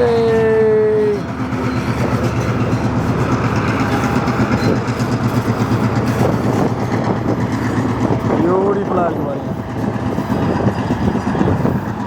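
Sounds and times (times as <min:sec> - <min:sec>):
train rumbling past: 0:00.0 - 0:12.0.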